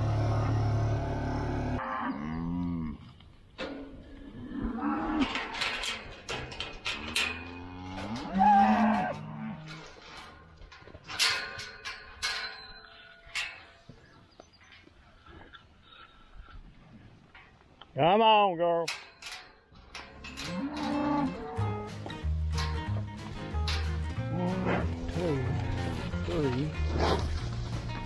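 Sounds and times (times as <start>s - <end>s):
steady engine hum: 0.0s - 1.8s
cattle mooing: 1.8s - 3.1s, 4.4s - 5.5s, 7.0s - 9.9s, 20.4s - 21.9s, 24.2s - 27.4s.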